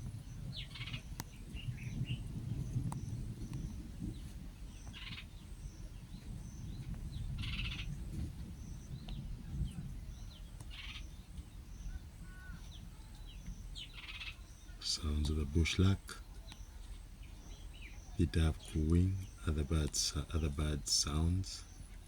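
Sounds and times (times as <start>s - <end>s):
steady low rumble: 0.0s - 22.0s
buzzy trilled bird call: 10.7s - 11.2s, 11.9s - 14.8s.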